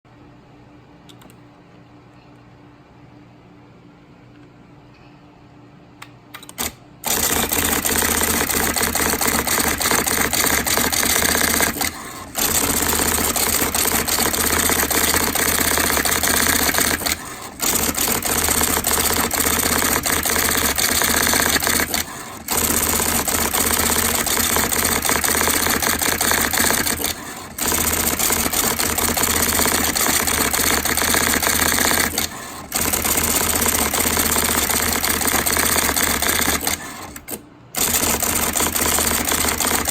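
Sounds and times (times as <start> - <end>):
electronic typewriter rattling: 6.4 - 39.9.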